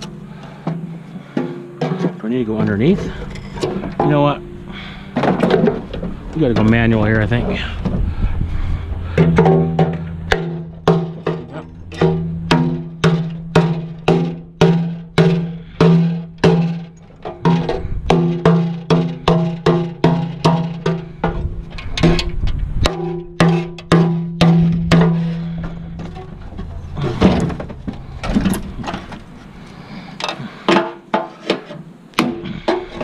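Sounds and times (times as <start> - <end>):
held low note: 2.6 - 5.1, 6.1 - 16.4
percussive beat of pitched knocks: 9.2 - 21.4, 22.8 - 25.5.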